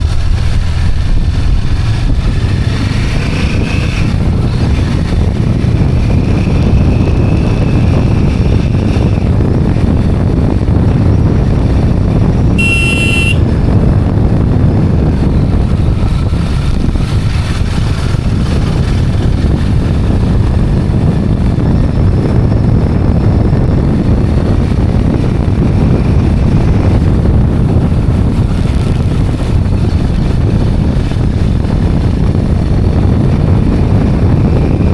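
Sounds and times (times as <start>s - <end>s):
road noise: 0.0s - 34.9s
wind on microphone: 0.0s - 34.9s
short horn toot: 12.6s - 13.5s.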